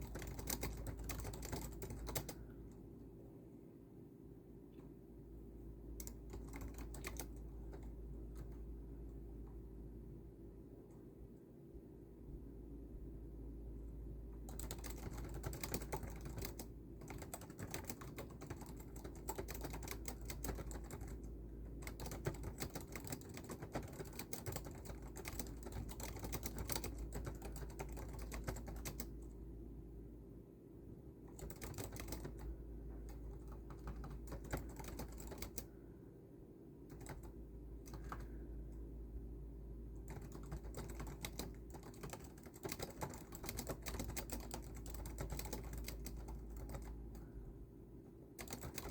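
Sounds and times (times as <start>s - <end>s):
typing on computer keyboard: 0.0s - 2.4s, 6.0s - 8.6s, 14.4s - 29.3s, 31.3s - 35.7s, 36.9s - 38.4s, 40.0s - 47.3s, 48.4s - 48.9s
steady low hum: 0.0s - 48.9s.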